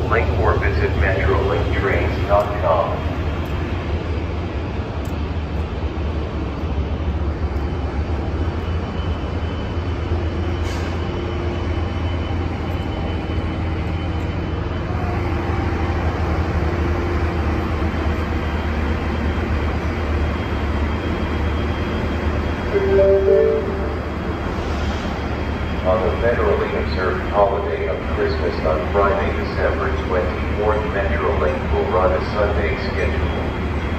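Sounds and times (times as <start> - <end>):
diesel train engine idling: 0.0 - 33.9
faint hum: 22.6 - 24.5.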